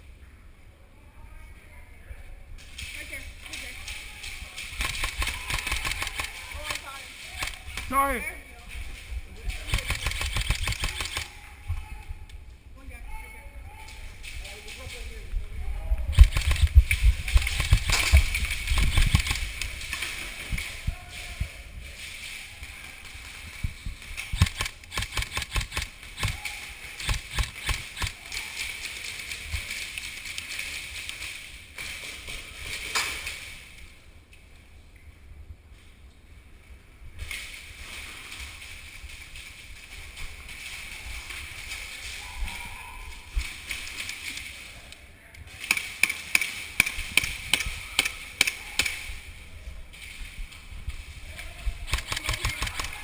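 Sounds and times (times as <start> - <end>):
rustling: 2.6 - 34.9, 35.6 - 53.0
airsoft rifle shots: 4.6 - 8.2, 9.6 - 11.4, 16.1 - 20.0, 24.2 - 28.3, 45.6 - 49.2, 51.8 - 53.0
irregular thumps and clicks: 16.1 - 20.7.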